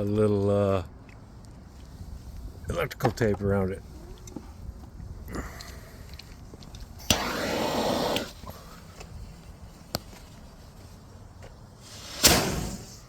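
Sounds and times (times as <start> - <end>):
hissing rush of venting: 7.0 - 8.8, 11.8 - 13.0
short burst of rushing noise: 11.8 - 13.0
sudden pop: 12.1 - 13.0.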